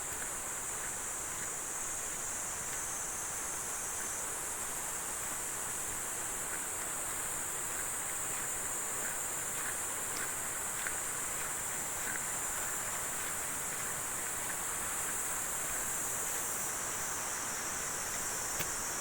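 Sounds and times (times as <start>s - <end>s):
flowing water hiss: 0.0s - 19.0s
high-pitched insect drone: 0.0s - 19.0s
faint ticks: 0.1s - 3.0s, 6.4s - 17.2s, 17.9s - 19.0s.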